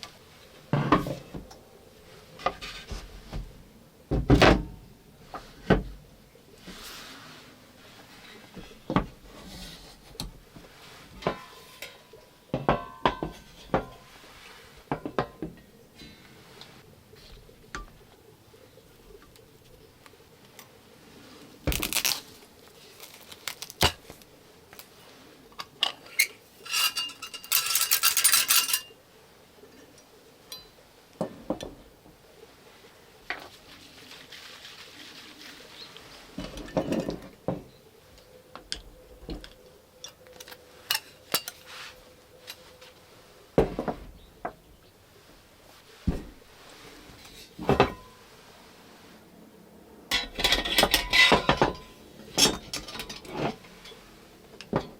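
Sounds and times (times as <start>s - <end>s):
cookware clinks and knocks: 11.2s - 14.0s, 26.2s - 29.0s, 50.1s - 53.6s
ringing metallic rattle: 26.2s - 29.0s.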